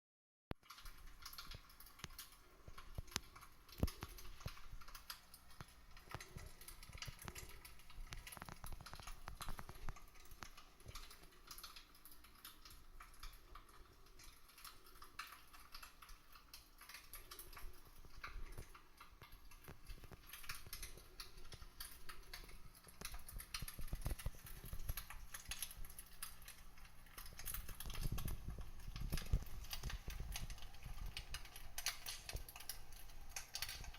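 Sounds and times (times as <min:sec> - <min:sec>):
wood fire crackling and popping: 0:00.5 - 0:33.9.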